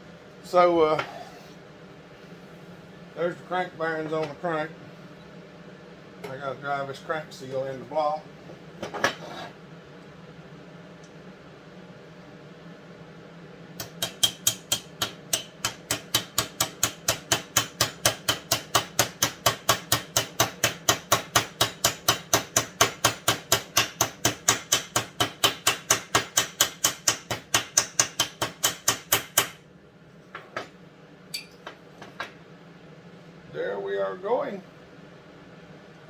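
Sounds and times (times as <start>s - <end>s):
small hammer tapping metal: 13.8s - 29.6s.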